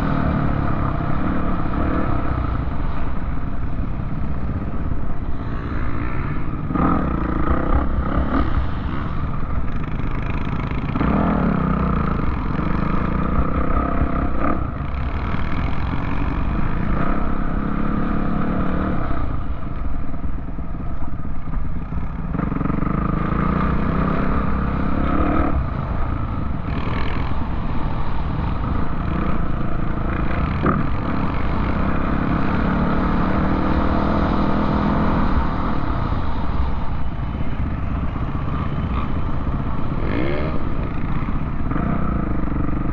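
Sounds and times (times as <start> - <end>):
vehicle engine revving: 38.7 - 40.8.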